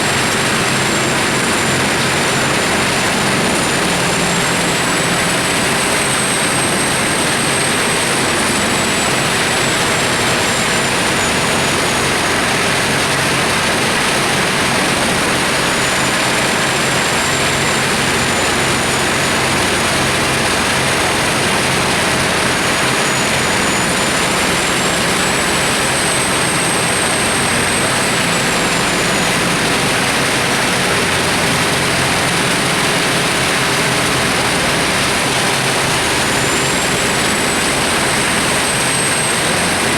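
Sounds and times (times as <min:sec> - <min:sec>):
faint high machine whine: 0:00.0 - 0:39.9
wood chipper running: 0:00.0 - 0:39.9.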